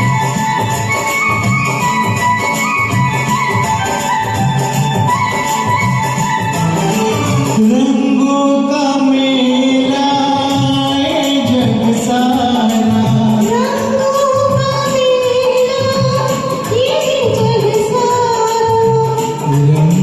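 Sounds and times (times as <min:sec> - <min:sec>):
person singing karaoke: 0:00.0 - 0:20.0
recorded backing track: 0:00.0 - 0:20.0.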